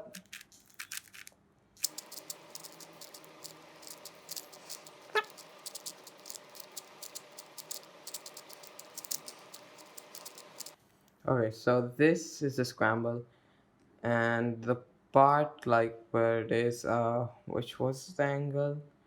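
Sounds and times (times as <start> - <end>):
puzzle cube plastic clicks: 0.0 - 10.8
faint steady hum: 0.0 - 12.6.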